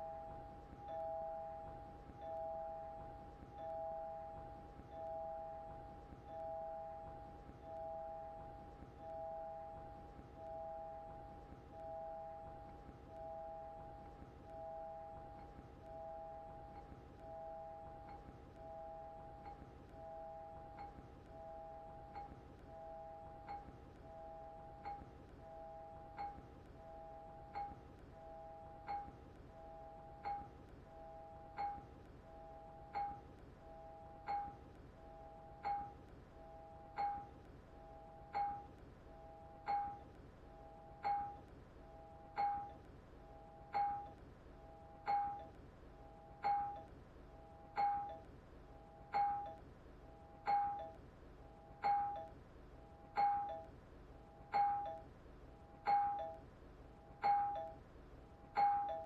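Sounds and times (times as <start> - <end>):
two-note doorbell chime: 55.8 - 56.4, 58.6 - 59.0.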